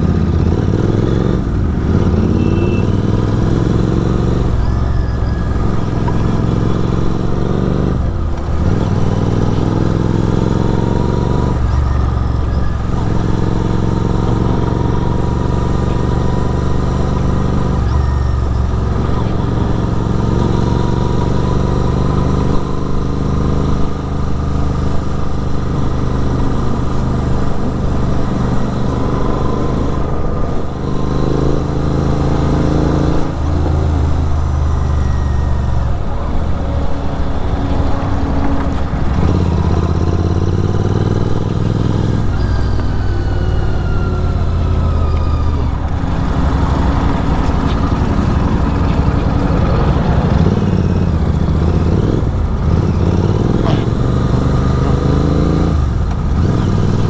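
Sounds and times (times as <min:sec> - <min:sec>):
superbike engine and exhaust: 0:00.0 - 0:57.0.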